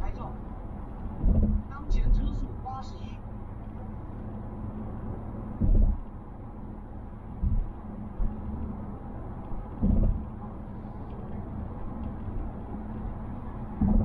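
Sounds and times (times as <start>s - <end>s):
tyre and road rumble: 0.0s - 14.0s
low thumps over bumps: 0.5s - 2.4s, 4.8s - 14.0s.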